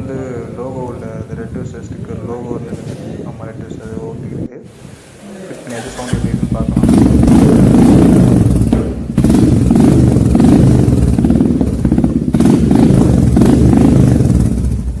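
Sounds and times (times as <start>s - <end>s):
motorcycle engine running: 5.8s - 15.0s.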